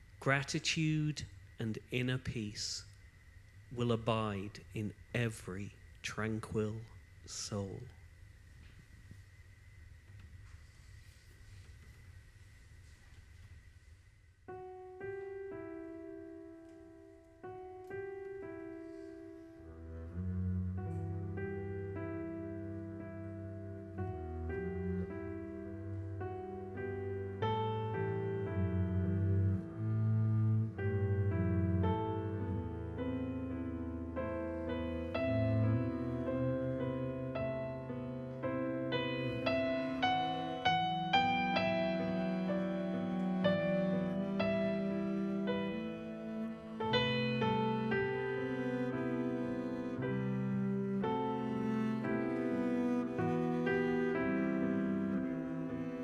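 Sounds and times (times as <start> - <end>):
solo piano notes: 14.5 - 56.0.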